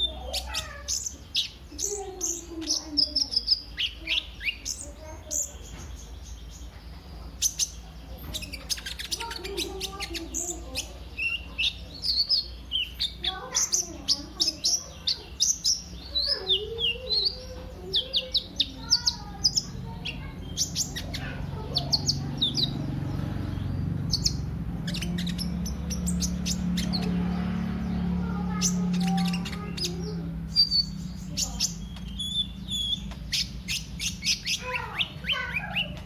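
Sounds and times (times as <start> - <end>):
bird chirping and trilling: 0.0 - 36.0.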